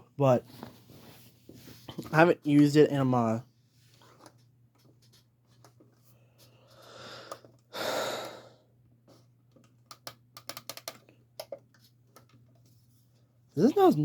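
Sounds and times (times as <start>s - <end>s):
person sighing: 6.8s - 8.6s.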